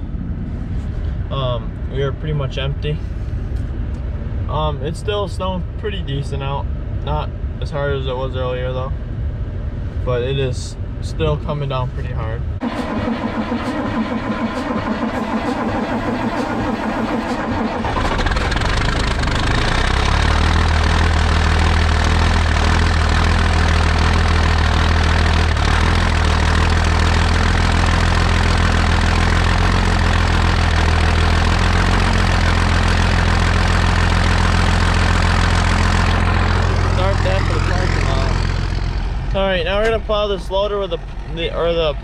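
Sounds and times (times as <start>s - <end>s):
heavy engine starting and idling: 12.6s - 42.0s.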